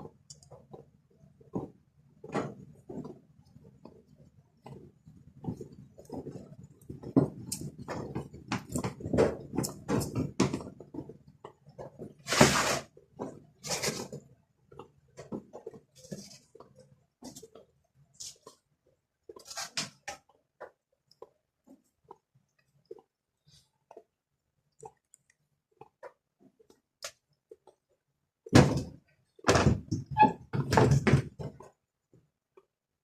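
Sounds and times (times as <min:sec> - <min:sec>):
scraping rustle: 0:12.2 - 0:12.9.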